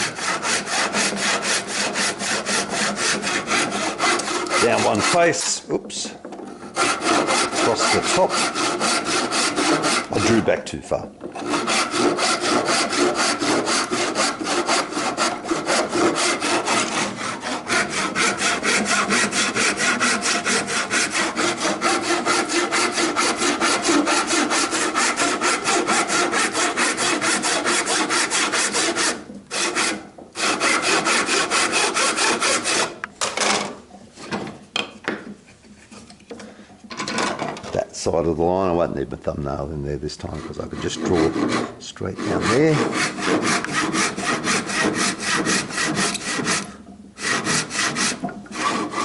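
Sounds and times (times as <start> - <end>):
hand saw cutting wood: 0.0 - 10.6, 11.2 - 34.4, 39.5 - 49.0.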